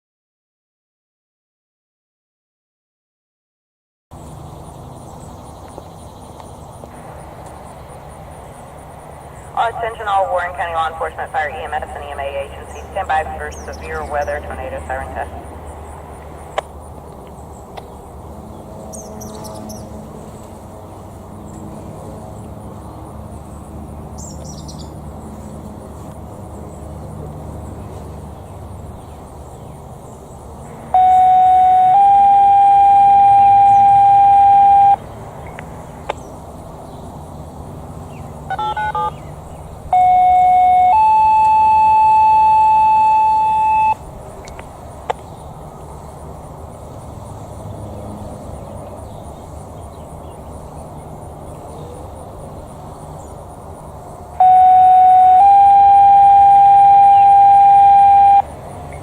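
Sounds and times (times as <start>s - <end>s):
quick touch-tone beeps: 31.0s - 35.0s, 38.5s - 39.1s, 40.0s - 44.0s, 54.4s - 58.4s
two-tone paging tones: 31.0s - 35.0s, 38.5s - 39.1s, 40.0s - 44.0s, 54.4s - 58.4s.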